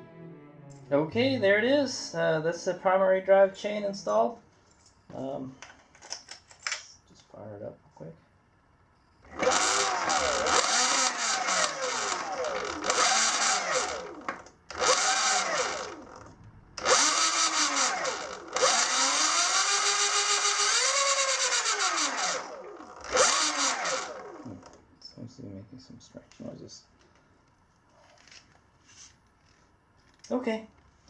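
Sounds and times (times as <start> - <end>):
person speaking: 0.0 - 4.5
electric motor whine: 9.2 - 24.7
chain whirring: 9.3 - 14.2, 14.8 - 24.4.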